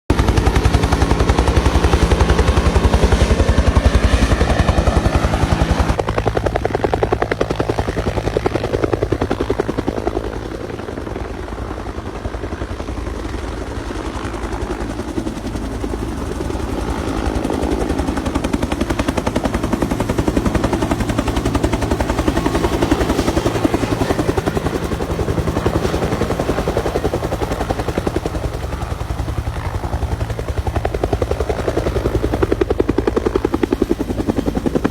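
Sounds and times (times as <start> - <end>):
helicopter rotor chopping: 0.1 - 34.9.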